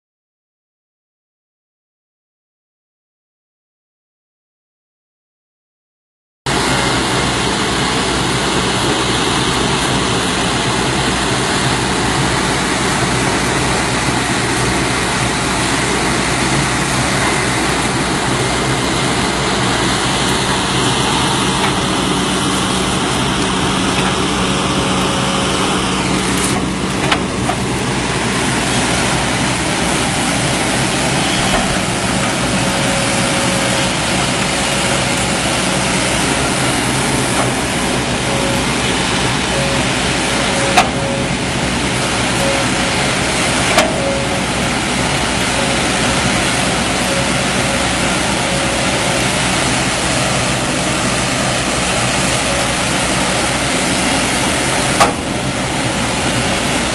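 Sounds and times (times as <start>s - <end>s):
diesel engine running under load: 6.5s - 56.9s.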